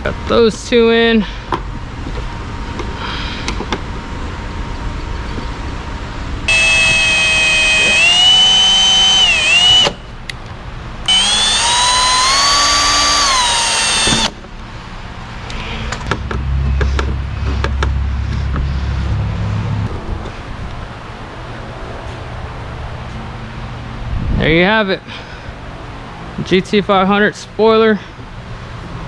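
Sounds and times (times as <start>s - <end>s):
cordless drill whine: 6.5s - 10.1s, 11.1s - 14.4s.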